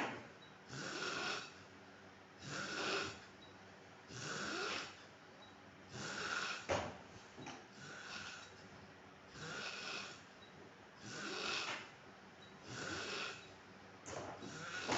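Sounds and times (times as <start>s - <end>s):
man snoring: 0.7s - 1.6s, 2.4s - 3.2s, 4.1s - 5.0s, 5.9s - 6.7s, 7.8s - 8.5s, 9.3s - 10.2s, 11.0s - 11.9s, 12.6s - 13.5s, 14.4s - 14.9s.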